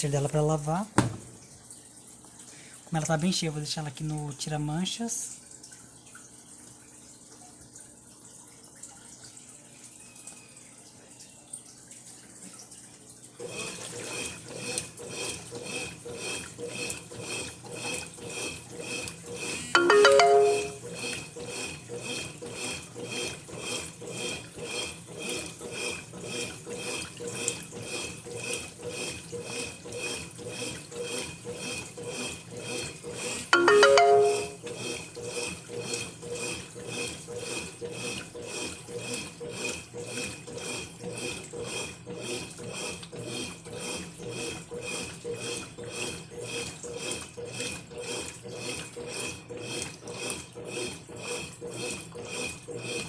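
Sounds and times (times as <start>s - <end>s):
washing machine water sloshing: 0.0s - 33.5s, 34.2s - 53.0s.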